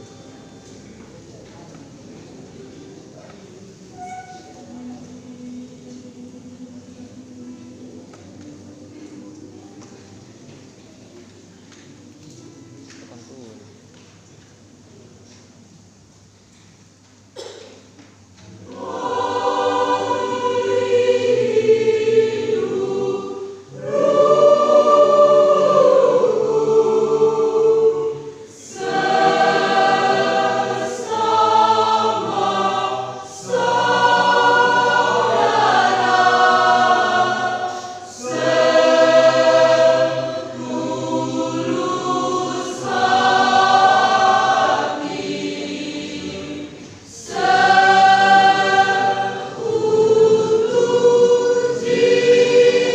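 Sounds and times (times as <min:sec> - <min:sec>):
choir singing a hymn: 0:00.0 - 0:09.9, 0:18.4 - 0:52.9.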